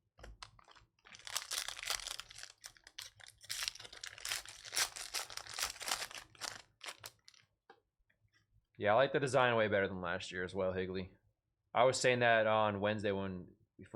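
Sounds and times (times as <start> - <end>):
wrapper crinkling and tearing: 0.4 - 7.5.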